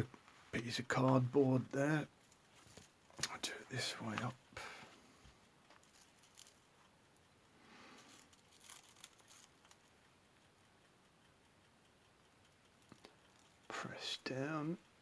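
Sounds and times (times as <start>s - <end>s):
faint rustling: 2.2s - 10.0s.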